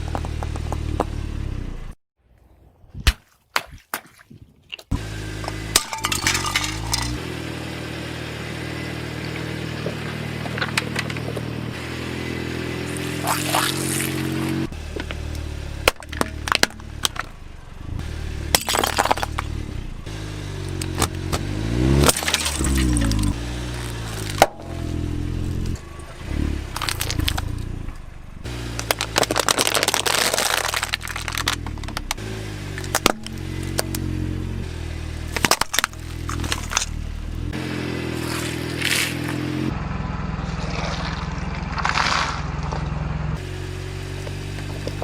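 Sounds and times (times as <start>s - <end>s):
car engine running slowly: 0.0s - 2.0s, 4.9s - 45.0s
tyre crushing objects: 20.8s - 25.7s, 26.3s - 27.7s, 28.5s - 34.1s, 35.3s - 37.0s.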